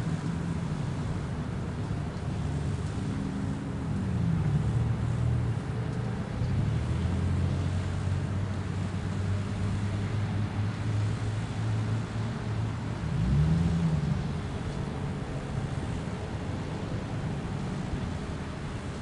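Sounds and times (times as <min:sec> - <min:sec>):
vehicle engine humming: 0:00.0 - 0:19.0
vehicle speeding up or passing: 0:06.6 - 0:16.0.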